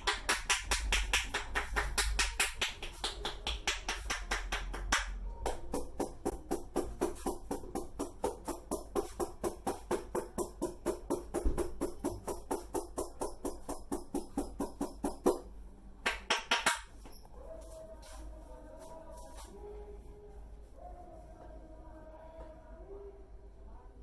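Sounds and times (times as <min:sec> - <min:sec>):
hands slapping on head: 0:00.0 - 0:15.4.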